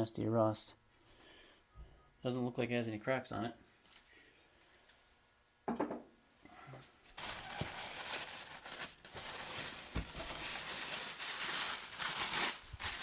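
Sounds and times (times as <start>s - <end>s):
paper crumpling and rustling: 7.1s - 13.0s.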